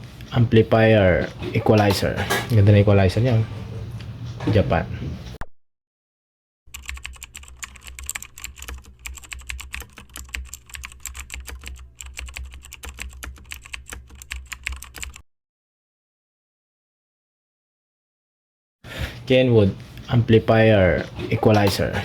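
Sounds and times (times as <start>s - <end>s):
rapid irregular clicking: 6.7s - 15.2s.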